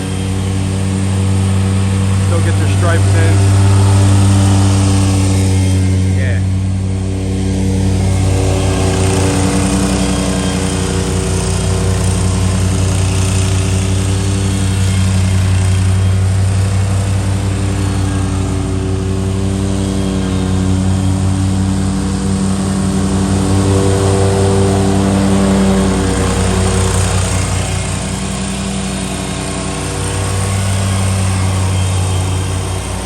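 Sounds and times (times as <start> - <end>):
lawn mower engine running: 0.0 - 33.0.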